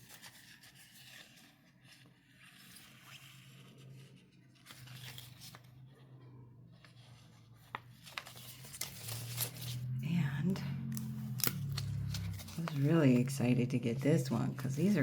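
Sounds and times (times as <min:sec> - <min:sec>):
low steady hum: 0:03.9 - 0:15.0
plastic packaging rustling: 0:07.5 - 0:10.0, 0:11.3 - 0:13.5.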